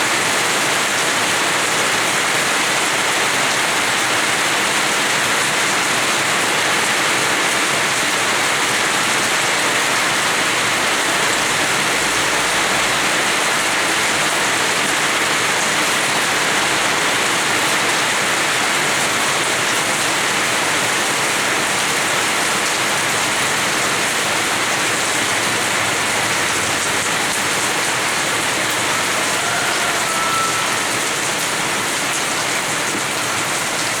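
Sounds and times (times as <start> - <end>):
steady rain falling: 0.0 - 34.0.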